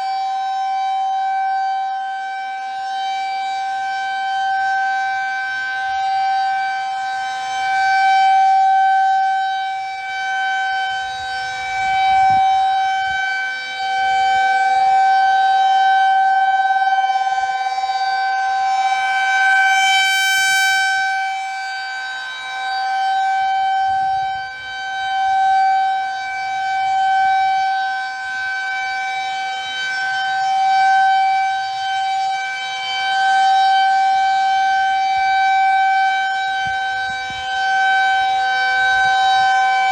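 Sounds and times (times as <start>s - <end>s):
rotating siren steady tone: 0.0s - 39.9s.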